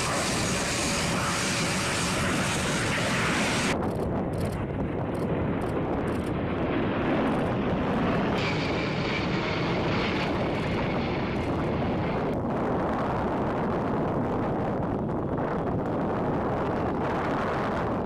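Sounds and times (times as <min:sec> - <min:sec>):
high whine: 0:00.0 - 0:03.8
jet engines rushing: 0:00.0 - 0:18.0.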